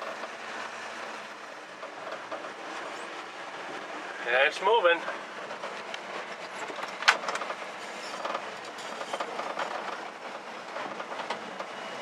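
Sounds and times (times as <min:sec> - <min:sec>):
pickup truck running: 0:00.0 - 0:12.0
rattles and clicks: 0:01.8 - 0:03.2, 0:05.0 - 0:11.8.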